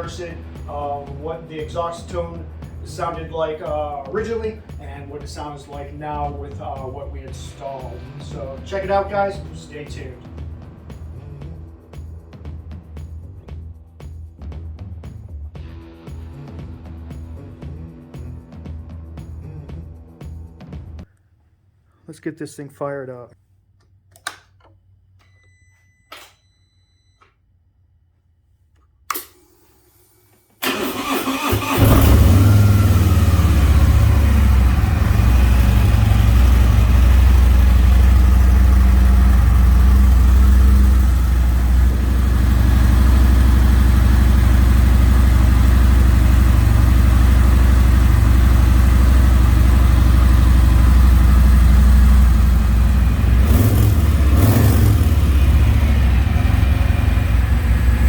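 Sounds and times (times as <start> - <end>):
motorcycle engine cranking and idling: 0.0 - 11.8, 29.1 - 58.0
click: 23.8 - 25.3, 28.8 - 29.4.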